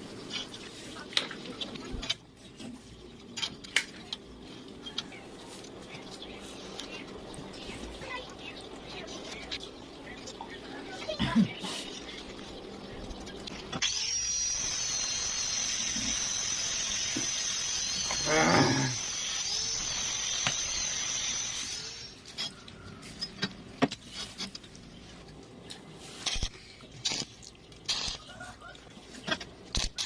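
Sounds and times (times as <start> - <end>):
arc welding hiss: 13.8 - 22.2.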